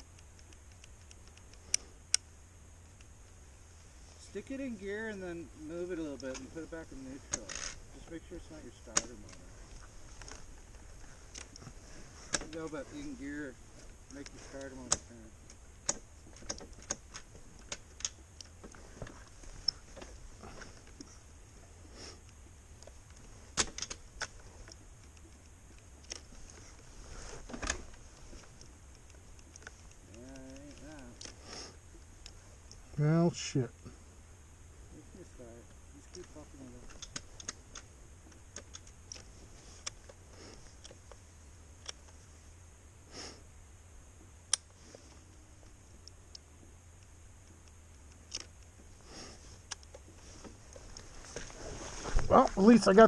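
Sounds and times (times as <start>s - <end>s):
faint clicks and taps: 0.0s - 3.4s
low steady hum: 0.0s - 53.0s
breathy sniff: 21.8s - 22.3s, 31.3s - 31.8s, 43.0s - 43.5s, 49.0s - 49.6s.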